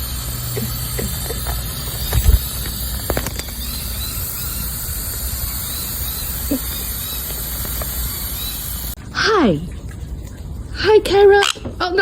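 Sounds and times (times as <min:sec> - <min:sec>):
shower water spraying: 0:00.0 - 0:09.0.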